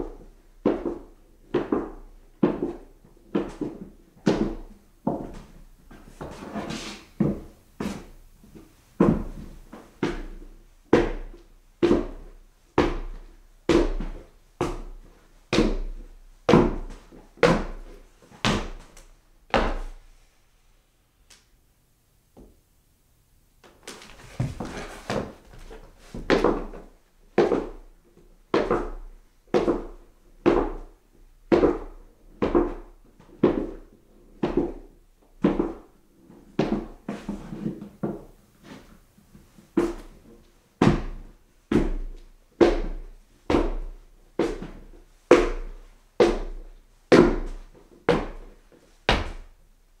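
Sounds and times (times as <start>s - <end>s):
footsteps climbing stairs: 23.6s - 27.8s.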